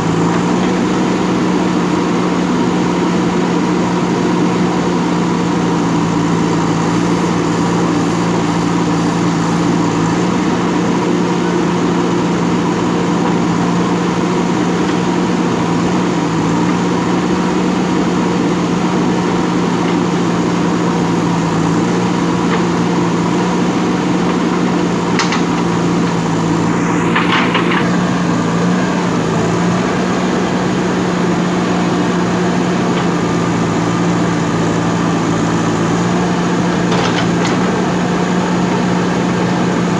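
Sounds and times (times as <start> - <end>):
diesel engine running: 0.0 - 39.9
rattle of knocks: 25.0 - 26.2, 27.0 - 27.9, 36.8 - 37.7.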